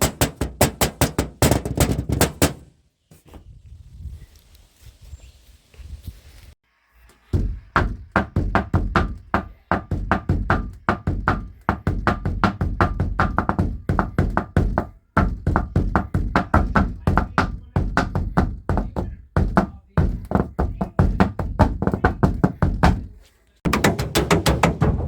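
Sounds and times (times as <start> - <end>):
drumming on an object: 0.0 - 2.7, 7.3 - 23.1, 23.7 - 25.0.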